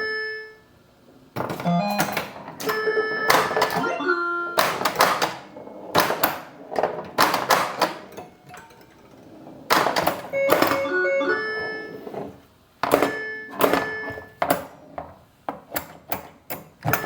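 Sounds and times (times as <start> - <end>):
pinball flippers clacking: 1.3 - 17.0
short electronic beeping tones: 1.7 - 4.6, 10.3 - 12.0.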